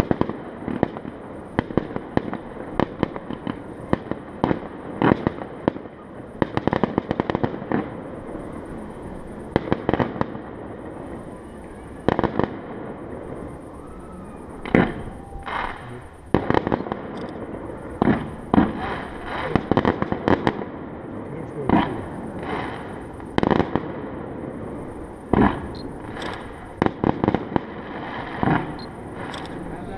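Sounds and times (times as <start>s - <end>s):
fireworks bangs: 0.0s - 29.9s
rapid firecracker cracks: 1.6s - 8.0s, 14.6s - 20.7s, 25.1s - 29.6s.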